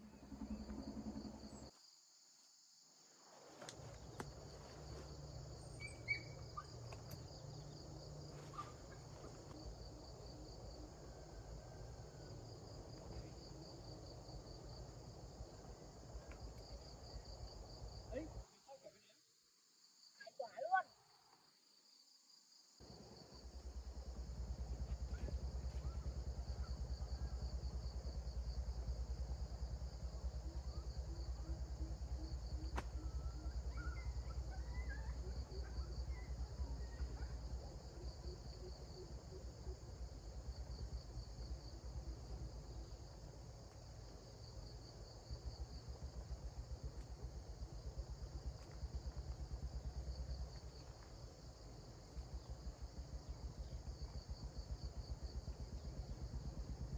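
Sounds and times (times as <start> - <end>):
crickets chirping: 0.0 - 56.9
steady low rumble: 22.8 - 34.6, 35.3 - 56.9.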